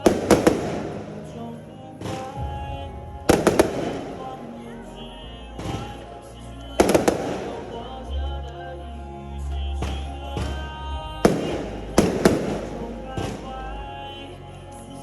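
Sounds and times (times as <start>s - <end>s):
fireworks bangs: 0.0s - 4.5s, 6.8s - 7.9s, 11.3s - 13.7s
music with low bass: 0.0s - 15.0s.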